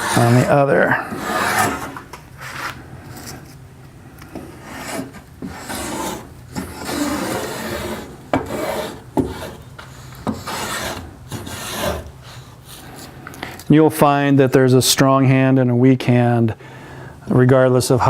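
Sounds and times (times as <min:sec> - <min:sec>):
blade rasping on wood: 0:00.0 - 0:02.0, 0:04.4 - 0:12.4.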